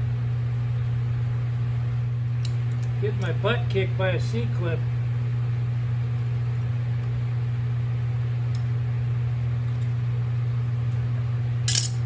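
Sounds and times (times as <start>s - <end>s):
cooler fan humming: 0.0s - 12.0s.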